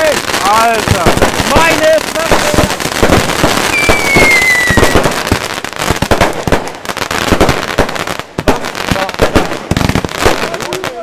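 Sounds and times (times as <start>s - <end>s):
fireworks and firecrackers banging: 0.0s - 11.0s
high falling whistle: 3.7s - 5.0s.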